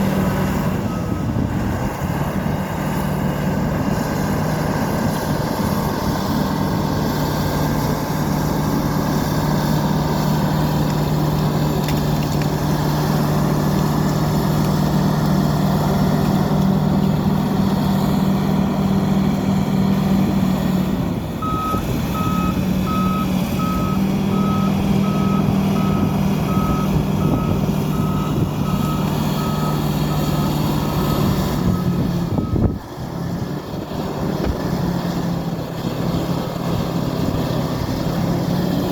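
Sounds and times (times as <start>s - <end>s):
diesel engine running: 0.0s - 38.9s
reversing alarm beeping: 0.8s - 1.4s, 21.4s - 32.6s.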